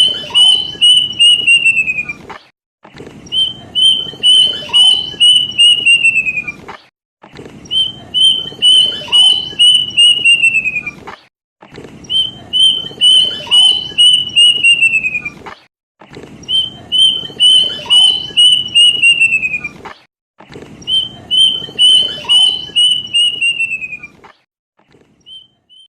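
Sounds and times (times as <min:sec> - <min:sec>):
cuckoo whistled song: 0:00.0 - 0:02.2, 0:03.3 - 0:06.6, 0:07.7 - 0:11.0, 0:12.1 - 0:15.4, 0:16.4 - 0:19.8, 0:20.9 - 0:24.2, 0:25.2 - 0:25.9.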